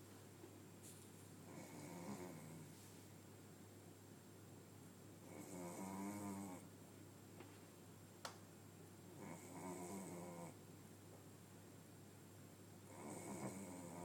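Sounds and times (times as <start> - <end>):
dog snoring faintly: 1.4 - 2.8, 5.2 - 6.7, 9.2 - 10.6, 12.9 - 14.0.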